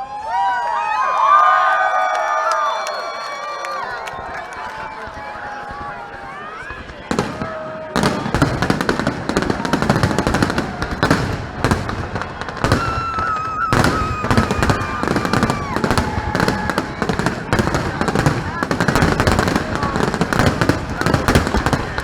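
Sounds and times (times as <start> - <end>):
fireworks bangs and crackling: 4.1 - 22.0
firework sharp crack: 6.8 - 22.0.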